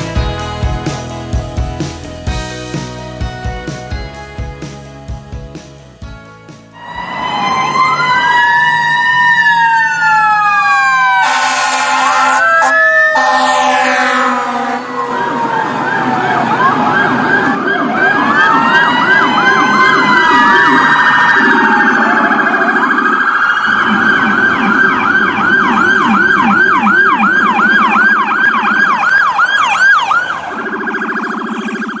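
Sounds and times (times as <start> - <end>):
emergency vehicle sirens wailing: 6.8 - 32.0.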